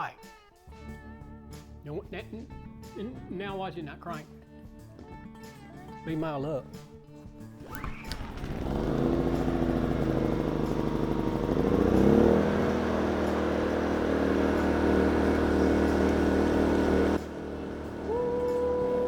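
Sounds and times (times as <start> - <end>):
small generator engine running: 7.6 - 19.0.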